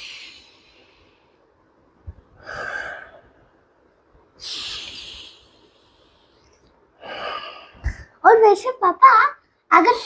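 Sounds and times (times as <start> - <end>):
man breathing hard through nose: 0.0 - 1.5, 2.3 - 3.4, 4.4 - 8.2.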